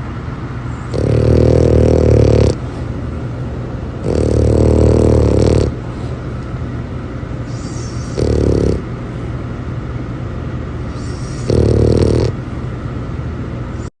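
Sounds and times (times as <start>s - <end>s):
dog snoring: 0.9s - 2.6s, 4.0s - 5.8s, 7.5s - 8.9s, 10.9s - 12.4s.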